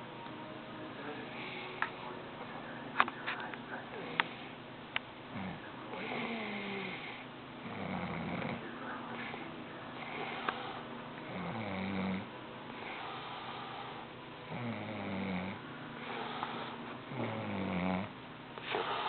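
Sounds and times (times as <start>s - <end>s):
man snoring: 5.3s - 9.4s, 10.0s - 19.0s.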